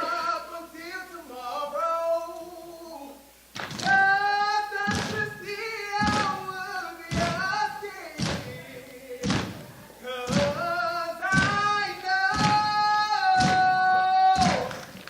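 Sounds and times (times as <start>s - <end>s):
voices singing a chant: 0.0s - 15.0s
heavy unison stomps: 3.6s - 15.0s.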